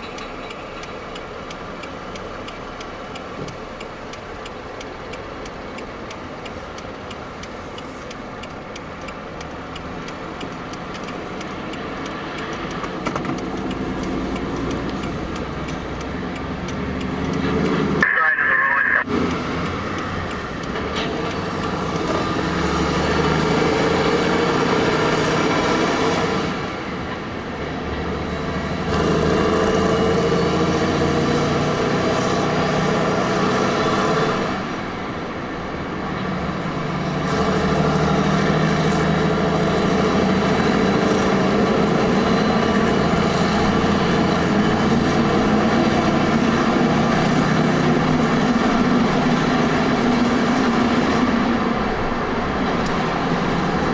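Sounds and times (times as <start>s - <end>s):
truck diesel engine pulling: 0.0s - 53.9s.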